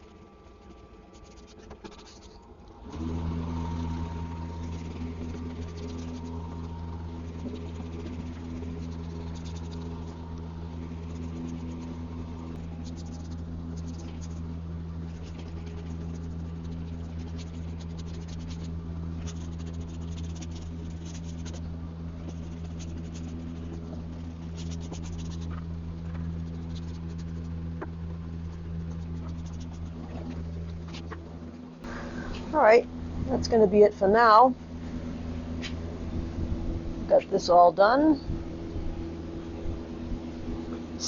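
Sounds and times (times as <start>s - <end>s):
paintbrush strokes on wood: 0.0s - 2.5s, 3.2s - 31.2s
steady low hum: 0.0s - 41.0s.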